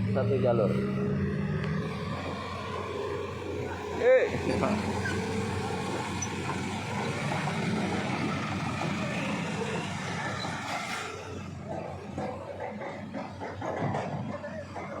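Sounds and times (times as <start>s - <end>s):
road noise: 0.0s - 15.0s
traffic engines running: 0.0s - 15.0s.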